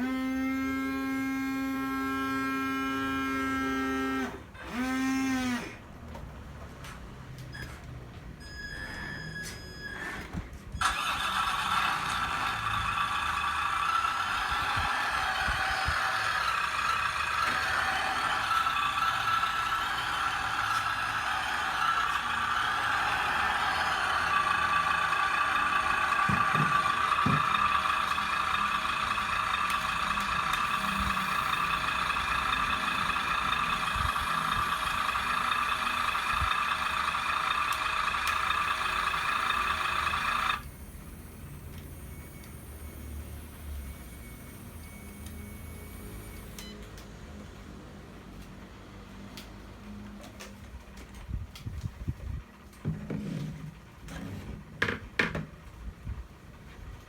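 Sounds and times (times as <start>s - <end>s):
radio-controlled model truck running: 0.0s - 5.8s, 9.8s - 47.0s.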